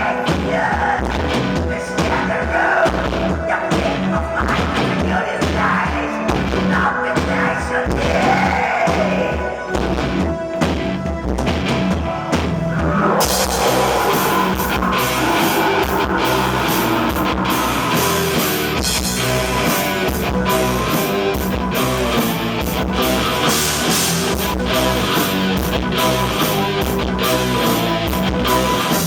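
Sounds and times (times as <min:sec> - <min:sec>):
distorted guitars and bass: 0:10.8 - 0:29.0.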